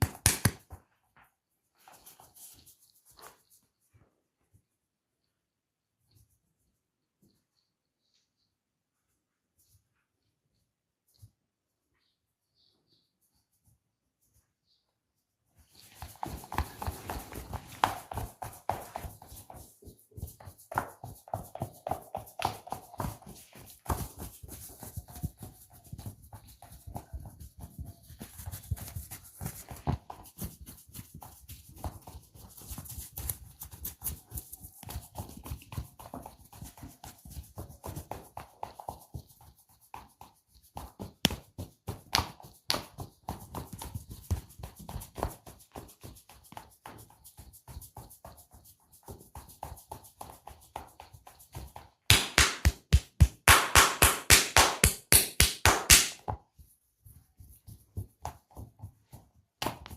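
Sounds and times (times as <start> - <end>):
taps and rubs on ear: 0.0 - 3.4, 15.8 - 56.6, 57.4 - 59.9.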